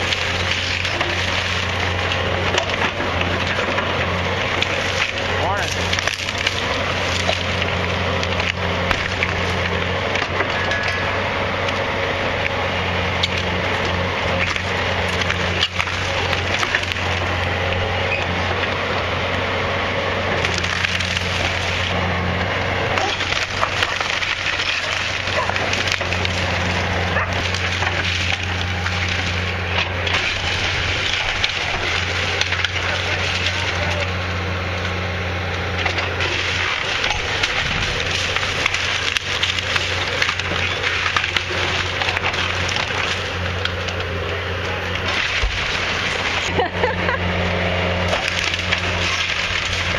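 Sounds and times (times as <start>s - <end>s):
low machine hum: 0.0s - 49.9s
timber splintering and cracking: 0.0s - 49.9s.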